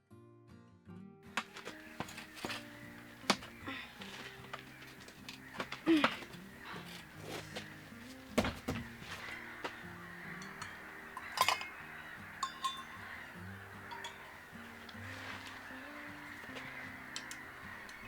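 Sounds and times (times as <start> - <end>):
soft background music: 1.0 - 18.0
light metallic clinks: 9.3 - 15.7.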